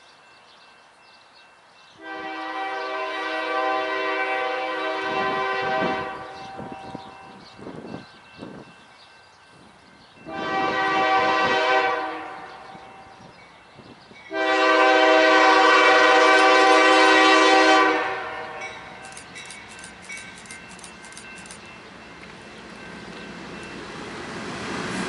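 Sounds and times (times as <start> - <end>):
locomotive air horn blasts: 2.0 - 7.1, 10.2 - 13.1, 14.3 - 19.1.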